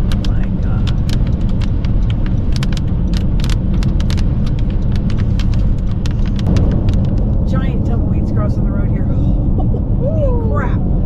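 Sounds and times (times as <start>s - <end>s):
debris ticking on car: 0.0s - 7.9s
road and wind rumble in car: 0.0s - 11.0s.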